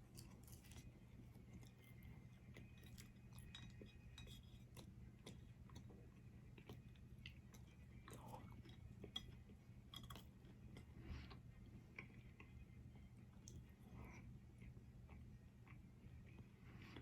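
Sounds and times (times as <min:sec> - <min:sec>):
faint close-up chewing: 0:00.0 - 0:17.0
steady low hum: 0:00.0 - 0:17.0.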